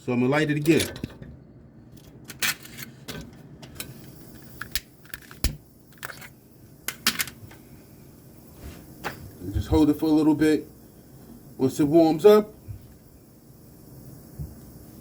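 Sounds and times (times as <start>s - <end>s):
furnace igniter clicking: 3.3s - 7.7s.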